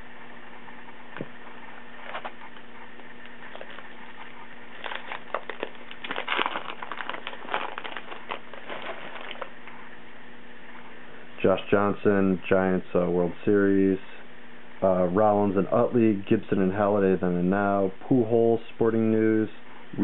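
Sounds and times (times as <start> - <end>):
wrapper and cards crinkling: 3.2 - 9.6.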